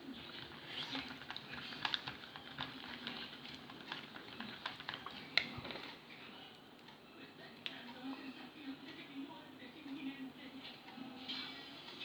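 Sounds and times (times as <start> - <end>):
stick scraping and clicking in bowl: 0.4 - 5.8.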